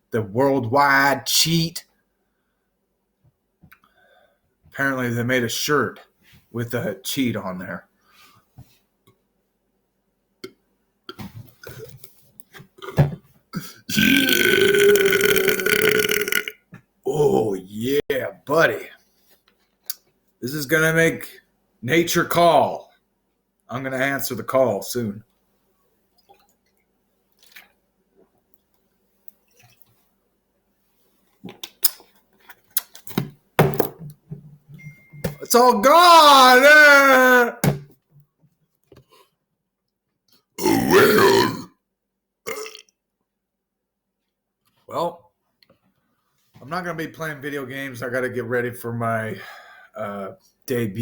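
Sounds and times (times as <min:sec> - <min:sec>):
man belching: 0:12.8 - 0:13.0, 0:13.6 - 0:17.6, 0:40.6 - 0:41.8, 0:42.5 - 0:42.9
short throaty noises: 0:13.6 - 0:16.5
loud gulps and swallows: 0:13.9 - 0:16.6.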